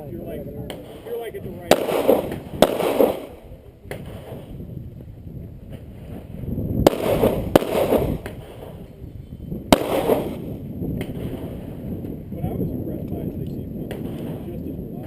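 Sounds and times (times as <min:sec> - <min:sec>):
pistol shots: 0:01.7 - 0:04.4, 0:06.8 - 0:08.8, 0:09.7 - 0:11.6, 0:13.8 - 0:14.4.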